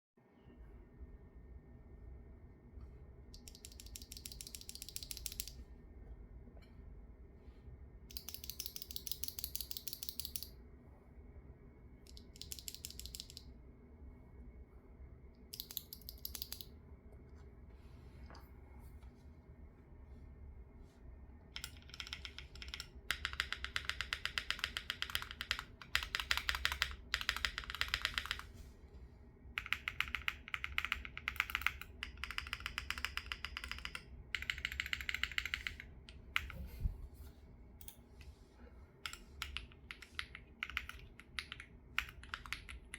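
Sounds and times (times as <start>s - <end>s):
mechanical keyboard typing: 3.4s - 5.6s, 8.1s - 10.6s, 12.1s - 13.5s, 15.5s - 16.7s, 21.6s - 28.5s, 29.6s - 36.6s, 39.0s - 42.9s.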